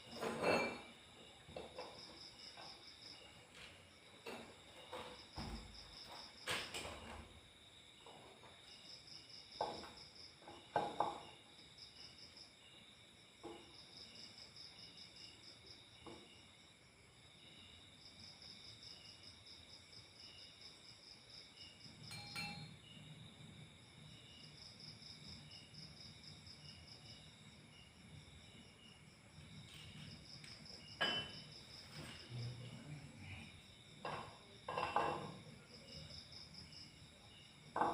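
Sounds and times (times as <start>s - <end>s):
insect slow chirp: 7.3s - 34.6s, 35.4s - 37.8s
objects knocking and clicking: 9.6s - 11.3s, 34.0s - 35.5s.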